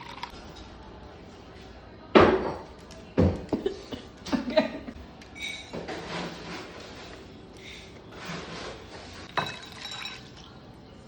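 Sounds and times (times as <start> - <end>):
kitchenware scraping and shuffling: 5.3 - 10.3.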